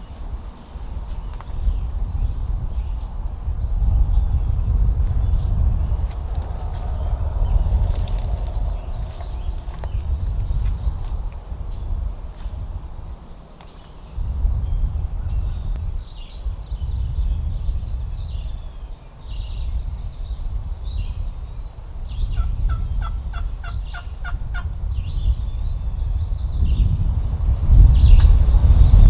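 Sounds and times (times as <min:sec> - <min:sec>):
songbirds chirping: 0:00.0 - 0:29.0
steady low rumble: 0:00.0 - 0:29.0
wild turkey calling: 0:22.3 - 0:24.7.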